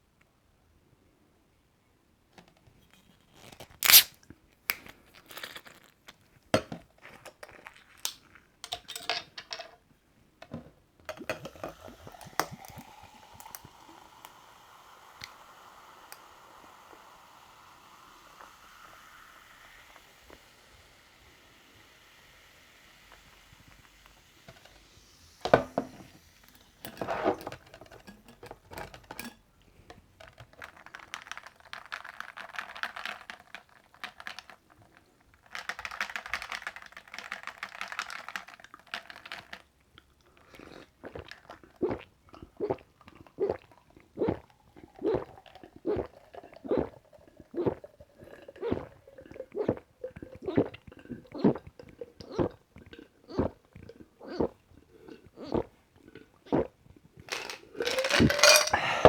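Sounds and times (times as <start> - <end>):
carbonated drink hissing: 3.8 - 4.1, 11.2 - 28.1, 57.3 - 59.0
can opening click: 3.8 - 4.9, 11.2 - 14.4
person gulping: 11.1 - 16.4, 40.2 - 59.0.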